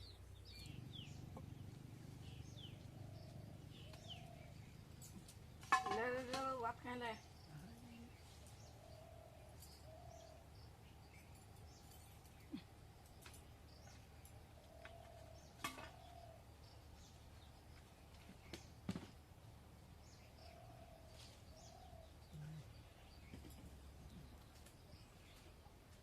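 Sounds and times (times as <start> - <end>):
faint bird chirps: 20.0 - 25.8.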